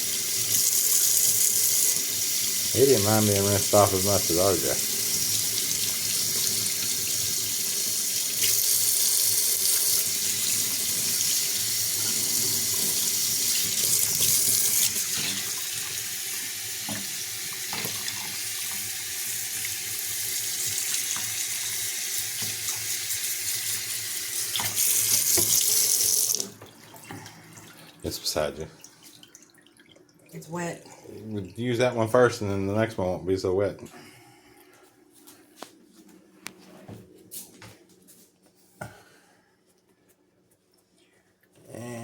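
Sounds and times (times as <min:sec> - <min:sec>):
tap water running in sink: 0:00.0 - 0:31.6.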